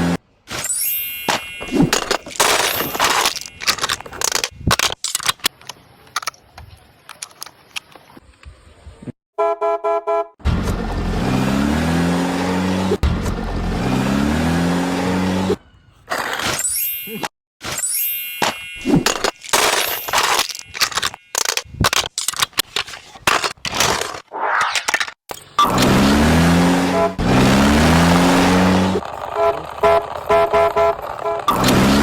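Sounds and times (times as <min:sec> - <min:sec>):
engine revving: 0:10.4 - 0:15.6, 0:25.6 - 0:32.0
short horn-like tone: 0:26.8 - 0:27.2.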